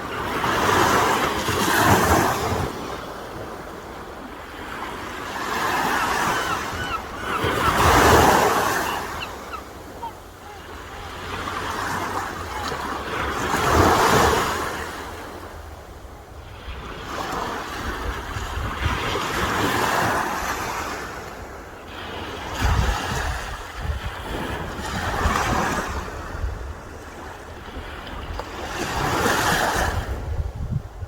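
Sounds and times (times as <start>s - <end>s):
sea waves breaking on shore: 0.0s - 31.0s
wind buffeting microphone: 5.0s - 19.7s, 22.4s - 27.0s, 27.6s - 31.0s.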